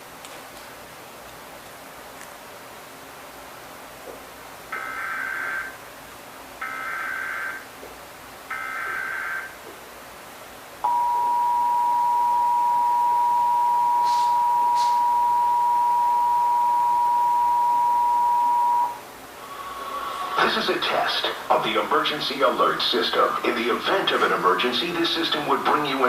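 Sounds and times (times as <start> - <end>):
two-tone attention signal: 10.8 - 19.0.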